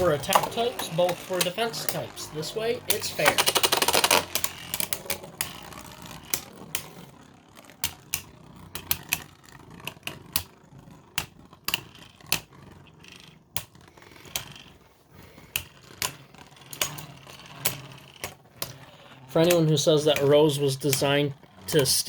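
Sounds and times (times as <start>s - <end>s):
spinning tops clicking and knocking: 0.0s - 22.0s.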